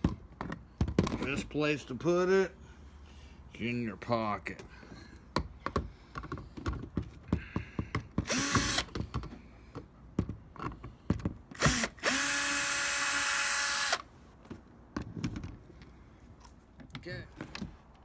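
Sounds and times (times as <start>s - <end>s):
power drill motor running: 8.2s - 8.9s, 11.6s - 14.1s.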